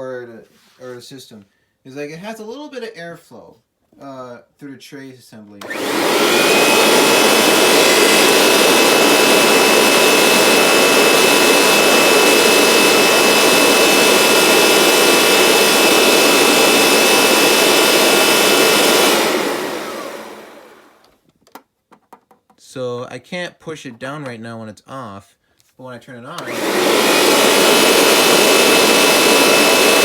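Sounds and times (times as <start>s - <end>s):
upright vacuum cleaner running: 5.6s - 21.2s, 26.4s - 30.0s
vacuum motor winding down: 5.6s - 21.2s, 26.4s - 30.0s.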